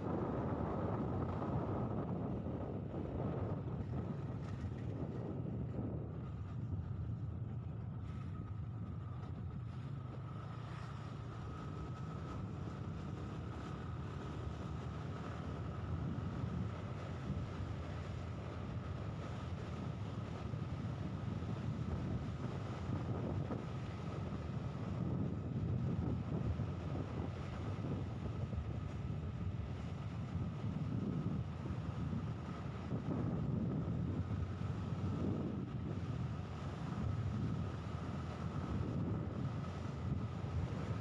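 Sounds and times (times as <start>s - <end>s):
wind buffeting microphone: 20.8s - 37.8s.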